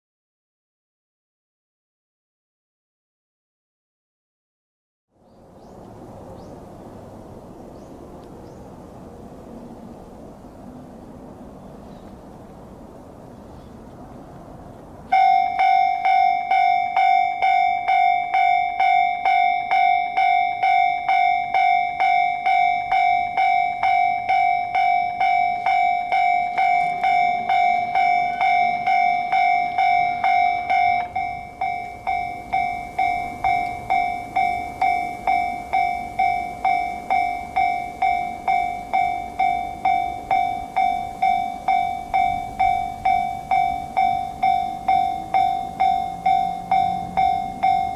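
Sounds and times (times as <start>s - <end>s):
railroad crossing bell ringing: 15.1s - 47.9s.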